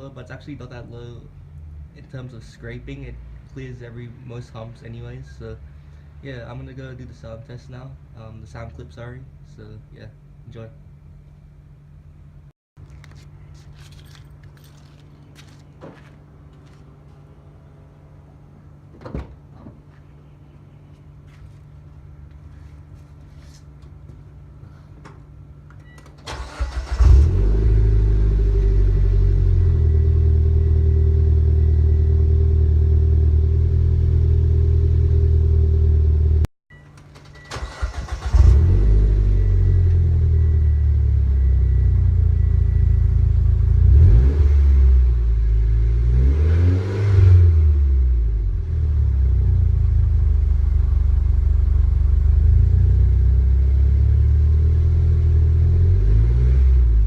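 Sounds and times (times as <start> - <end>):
car engine starting: 26.0 - 36.5, 37.1 - 57.0
car engine idling: 49.6 - 54.2.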